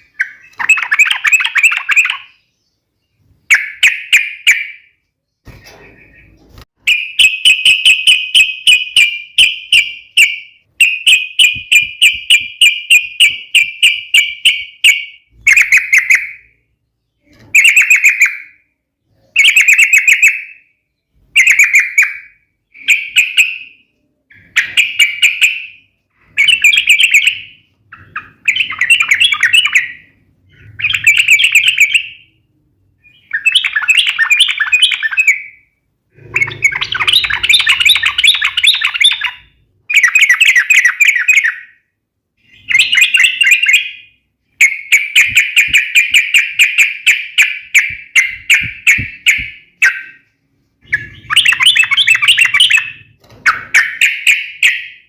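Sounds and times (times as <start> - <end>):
bulbul singing: 0.0 - 55.0
fast repeated chattering notes: 47.4 - 50.0.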